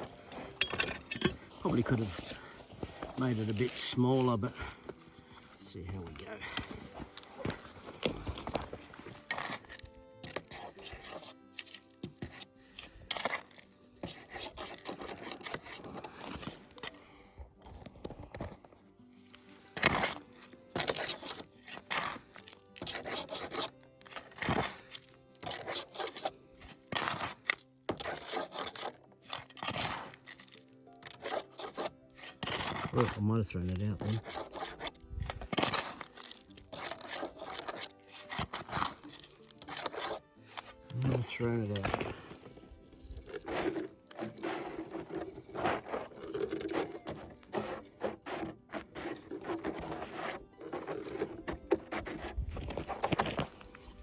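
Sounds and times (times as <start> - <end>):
pick scraping gravel and dirt: 0.0 - 5.0, 5.6 - 18.6, 19.3 - 54.0.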